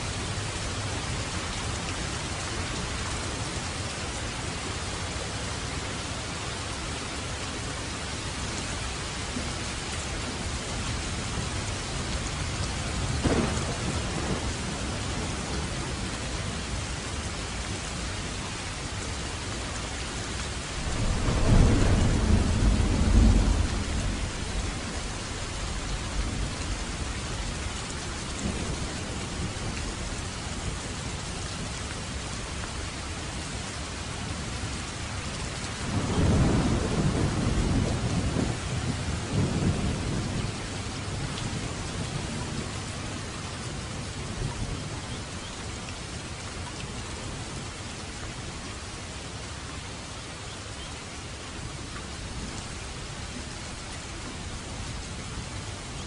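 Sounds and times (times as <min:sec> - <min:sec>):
heavy rain hissing: 0:00.0 - 0:56.0
thunder rumbling: 0:13.0 - 0:16.6, 0:20.7 - 0:27.1, 0:35.9 - 0:42.7.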